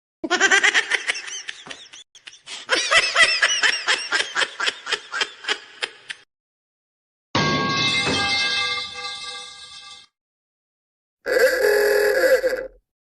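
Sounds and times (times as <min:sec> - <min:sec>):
high-pitched giggling laughter: 0:00.2 - 0:06.2.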